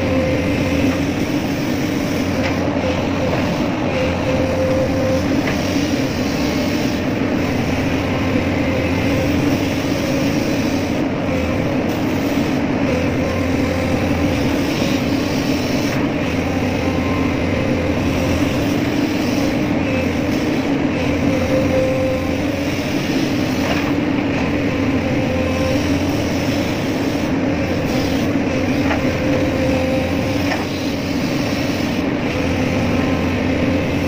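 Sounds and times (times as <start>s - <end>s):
diesel engine droning: 0.0s - 34.0s
thin steady whine: 0.0s - 34.0s.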